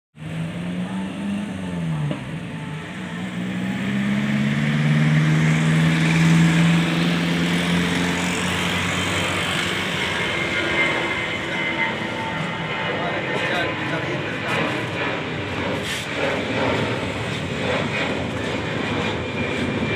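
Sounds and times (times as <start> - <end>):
engine running with low hum: 0.2 - 19.9.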